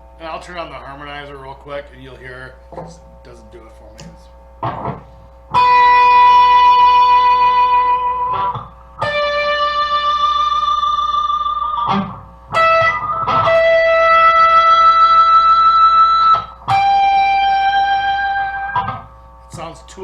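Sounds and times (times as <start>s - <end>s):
sustained electric guitar notes: 2.6s - 19.8s.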